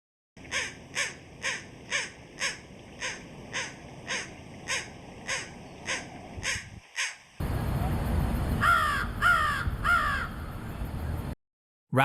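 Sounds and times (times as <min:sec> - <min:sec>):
crow cawing: 0:00.4 - 0:07.2, 0:08.6 - 0:10.6.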